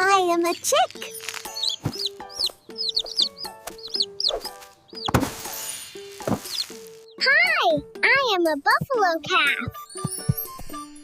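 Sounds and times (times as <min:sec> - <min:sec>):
light background music: 0:00.0 - 0:11.0
baby chick peeping: 0:00.3 - 0:05.2, 0:06.2 - 0:07.2.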